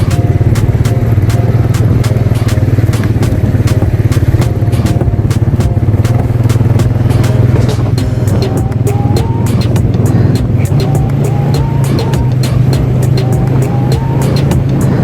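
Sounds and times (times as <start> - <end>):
atv engine running: 0.0 - 15.0
sharp clicks and rattles: 0.0 - 15.0.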